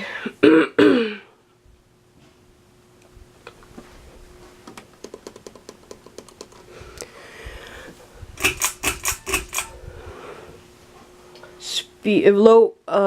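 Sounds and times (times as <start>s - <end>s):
faint steady hum: 0.0s - 13.0s
fan speed switch clicking: 8.4s - 9.8s.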